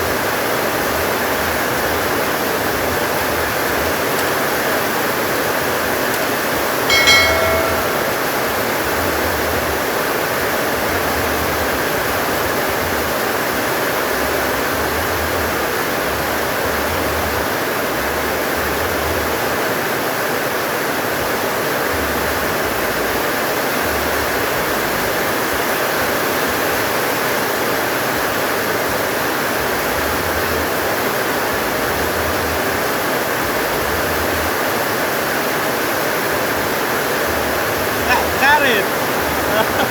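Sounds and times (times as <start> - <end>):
short ringing ping: 6.9 - 9.2.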